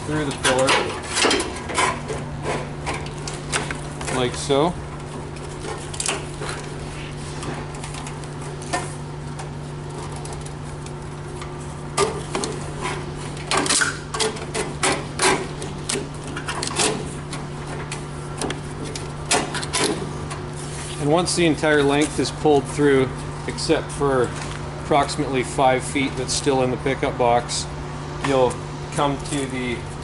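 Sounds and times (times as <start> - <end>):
wires rubbing and scraping on panel: 0.1 - 4.2, 5.0 - 22.4.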